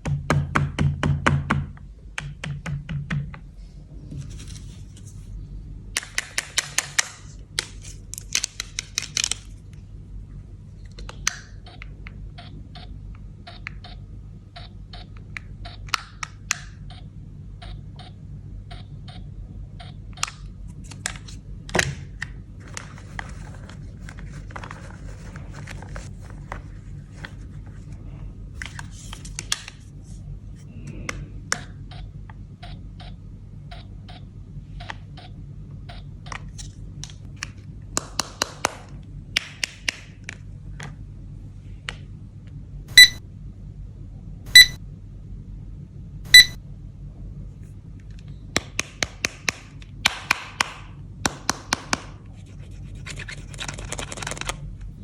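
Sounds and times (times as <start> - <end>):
steady low hum: 0.0 - 55.0
electronic toy beeps: 42.9 - 43.2, 44.5 - 44.8, 46.3 - 46.6.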